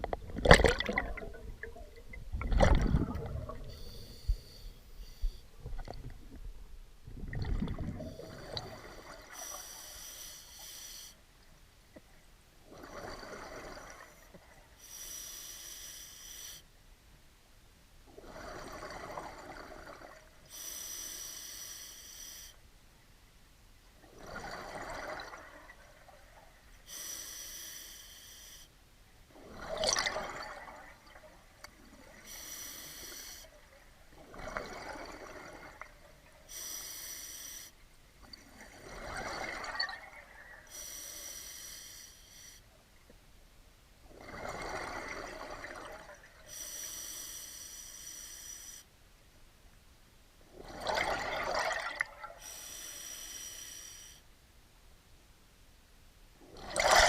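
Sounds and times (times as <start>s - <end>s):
bubbling exhalation: 0.0s - 4.2s, 7.1s - 8.8s
regulator inhalation hiss: 9.3s - 11.2s, 14.8s - 16.7s, 20.5s - 22.6s, 26.9s - 28.7s, 32.3s - 33.5s, 36.5s - 37.8s, 40.7s - 42.6s, 46.5s - 48.9s, 52.4s - 54.3s.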